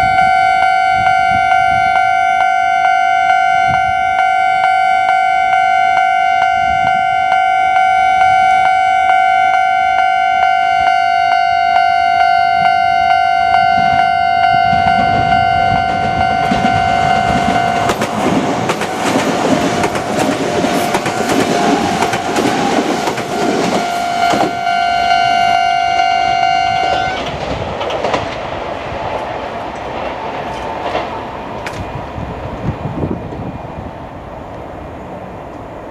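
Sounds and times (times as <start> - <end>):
level-crossing warning bell ringing: 0.0 - 27.2
train wheels clattering over rail joints: 15.9 - 24.6, 27.2 - 32.0.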